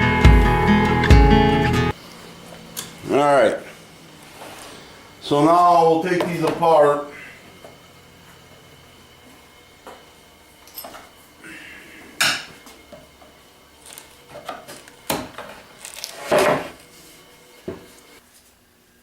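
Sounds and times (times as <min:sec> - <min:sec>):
knocks and clatter of parts handled: 0:10.6 - 0:11.1.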